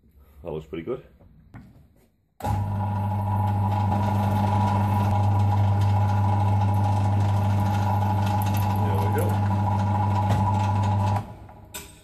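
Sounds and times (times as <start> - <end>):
milling machine motor humming: 2.4 - 11.6.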